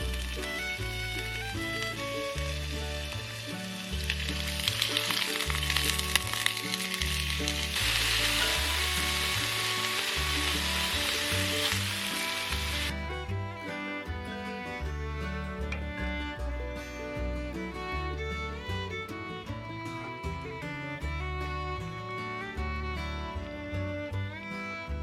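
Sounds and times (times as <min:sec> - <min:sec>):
food sizzling in a pot: 0:00.0 - 0:12.9
background music with bass line: 0:00.0 - 0:25.0.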